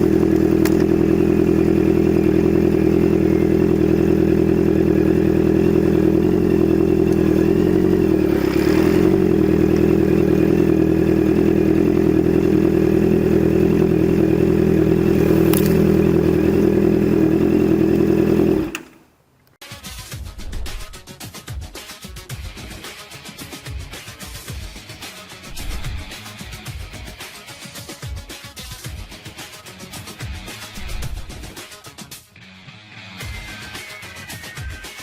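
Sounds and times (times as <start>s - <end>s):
motorcycle engine at high speed: 0.0s - 19.0s, 20.4s - 21.0s, 24.4s - 26.8s, 29.9s - 31.6s.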